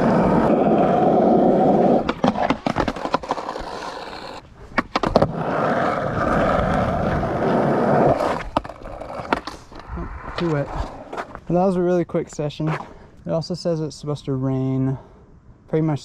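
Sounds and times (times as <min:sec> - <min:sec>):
skateboard wheels rolling on concrete: 0:00.0 - 0:13.5
skateboard clacks and knocks: 0:01.9 - 0:04.0.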